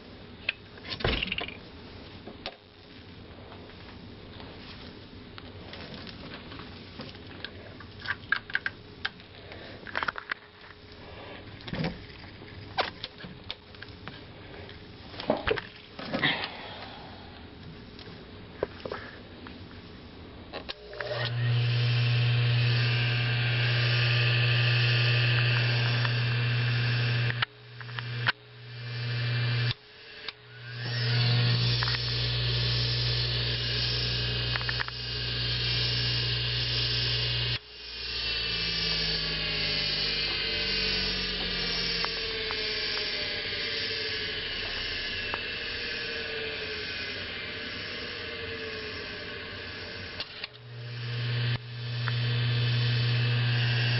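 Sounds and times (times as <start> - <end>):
electric motor humming and whining: 20.7 - 53.9.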